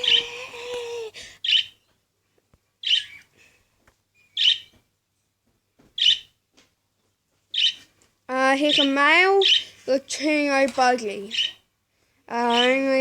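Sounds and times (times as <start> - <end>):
budgerigar chirping: 1.4 - 1.9, 2.8 - 3.3, 4.3 - 4.8, 6.0 - 6.4, 7.5 - 7.8, 8.7 - 9.8, 11.3 - 11.6.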